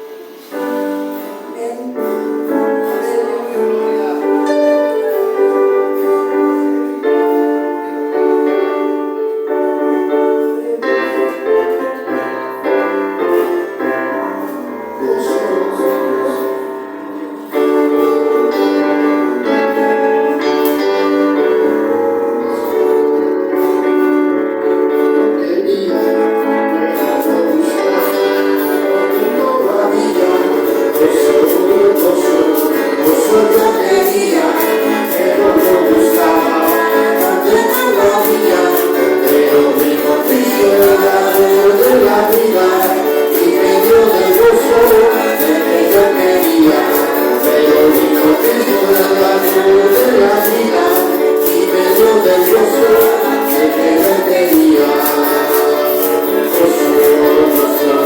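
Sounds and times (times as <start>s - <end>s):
shaken percussion beat: 0.0s - 8.1s, 25.9s - 58.0s
keyboard chords: 0.0s - 58.0s
person singing: 0.0s - 58.0s.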